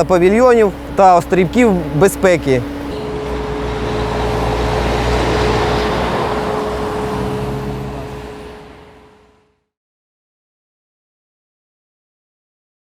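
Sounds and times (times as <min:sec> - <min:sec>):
steady machine whine: 0:00.0 - 0:09.6
road-building machinery engine hum: 0:00.0 - 0:09.7.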